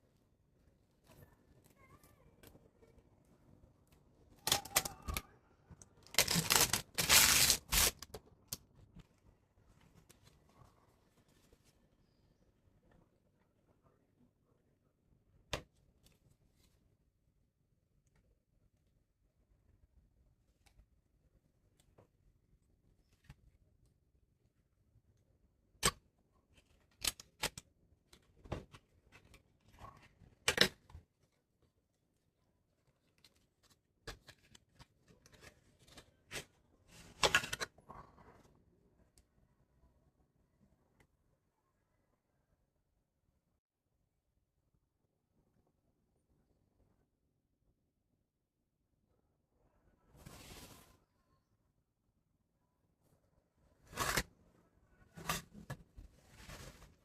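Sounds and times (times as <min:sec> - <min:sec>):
packaging rustling and crinkling: 0:06.0 - 0:08.1.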